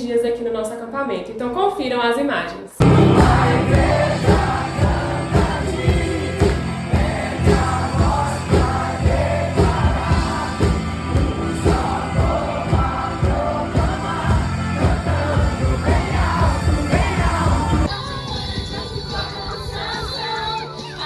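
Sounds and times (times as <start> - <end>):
steady drum beat: 2.8 - 17.9
group of voices singing: 2.8 - 21.0.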